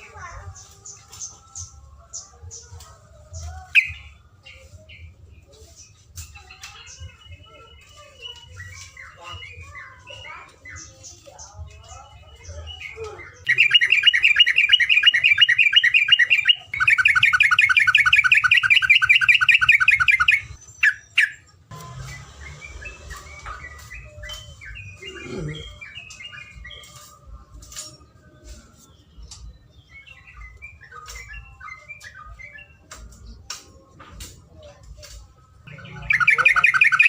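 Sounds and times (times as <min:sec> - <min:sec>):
bird chirps: 0:00.0 - 0:33.6, 0:35.0 - 0:37.0.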